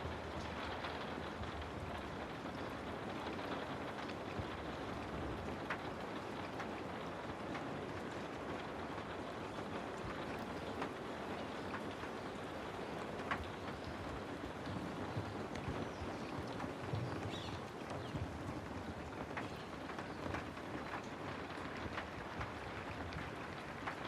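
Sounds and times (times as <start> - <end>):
rain falling: 0.0 - 24.0.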